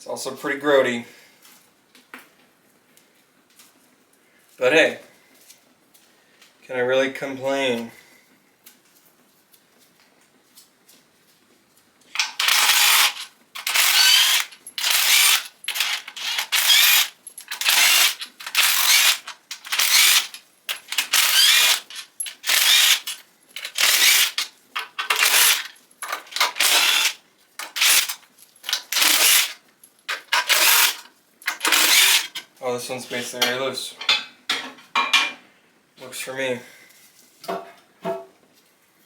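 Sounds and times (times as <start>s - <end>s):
ratchet wrench clicking: 12.2s - 32.4s.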